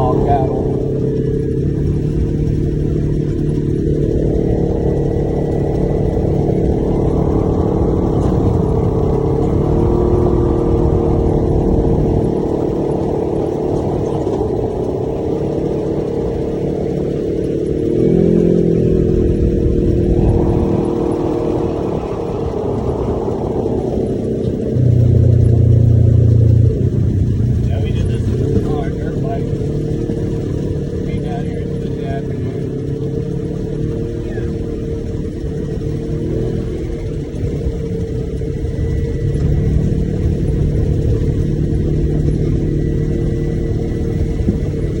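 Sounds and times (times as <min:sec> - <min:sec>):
low hum: 0:00.0 - 0:45.0
utv engine running: 0:00.0 - 0:45.0.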